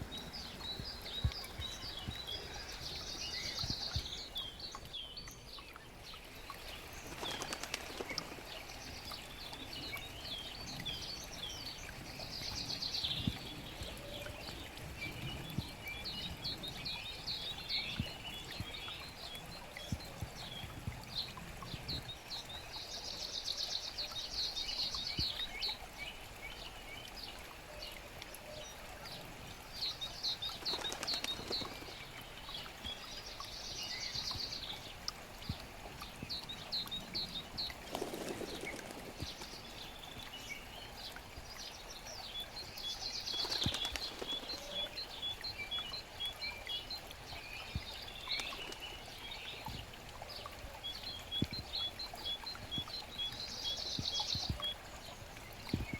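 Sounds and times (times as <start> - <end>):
brook water gurgling: 0.0 - 55.9
songbirds chirping and trilling: 0.0 - 55.9.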